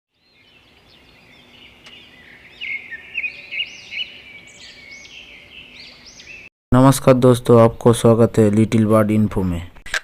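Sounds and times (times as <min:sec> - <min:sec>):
birds chirping and calling: 0:00.1 - 0:06.5.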